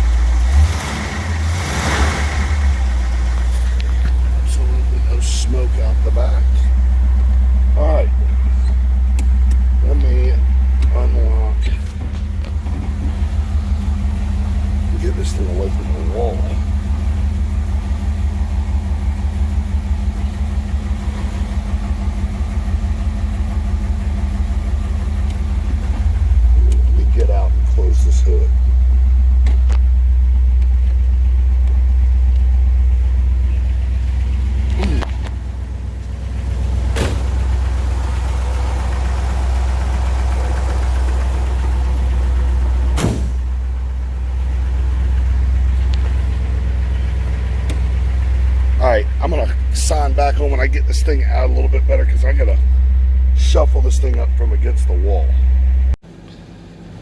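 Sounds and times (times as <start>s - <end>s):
car engine idling: 0.0s - 57.0s
sharp thumps: 36.8s - 37.6s, 42.9s - 43.6s.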